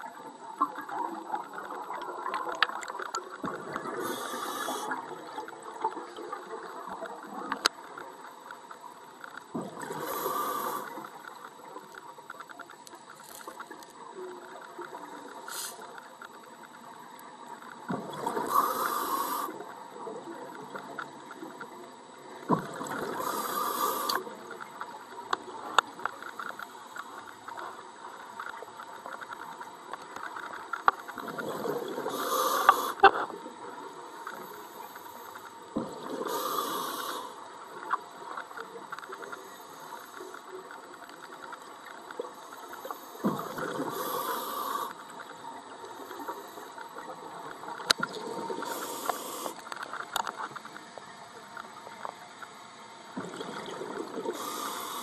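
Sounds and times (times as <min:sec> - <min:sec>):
faint hiss: 0:00.0 - 0:55.0
exhaled bubbles underwater: 0:17.9 - 0:24.5, 0:47.0 - 0:49.5, 0:53.2 - 0:55.0.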